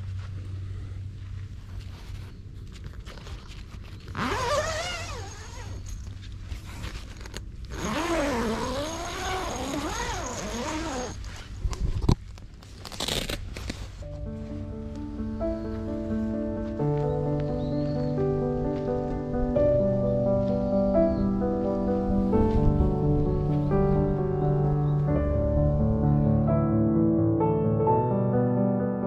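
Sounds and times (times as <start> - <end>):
steady low hum: 0.0 - 7.8.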